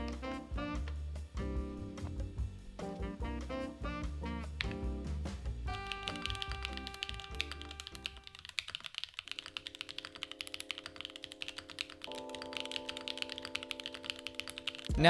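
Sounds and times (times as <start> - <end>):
background music with held chords: 0.0 - 8.2
mechanical keyboard typing: 5.8 - 15.0.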